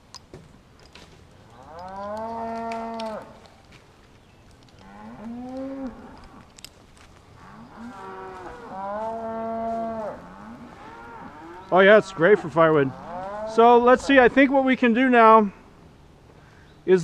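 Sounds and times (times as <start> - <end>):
cattle mooing: 1.6 - 3.4, 7.4 - 14.3.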